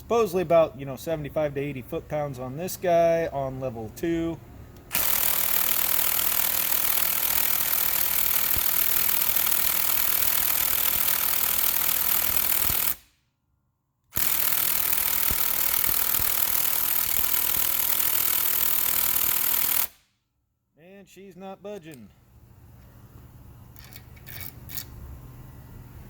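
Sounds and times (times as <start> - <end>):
impact wrench hammering: 4.9 - 13.0, 14.2 - 20.0.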